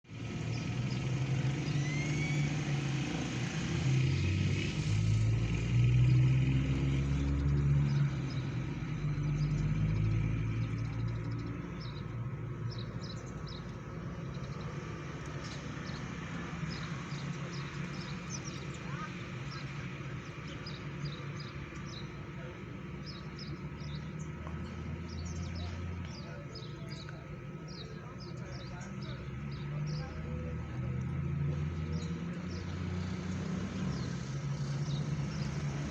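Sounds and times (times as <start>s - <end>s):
small birds chirping: 0.1s - 35.9s
vehicle engine running: 0.1s - 35.9s.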